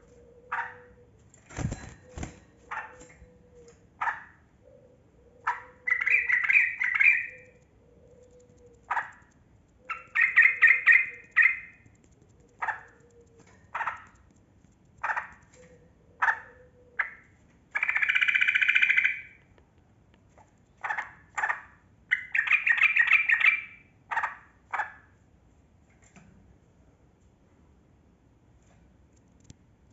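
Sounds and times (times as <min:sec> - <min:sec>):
bird singing: 0:05.4 - 0:09.2, 0:09.8 - 0:11.8
rapid bird chattering: 0:05.5 - 0:14.3.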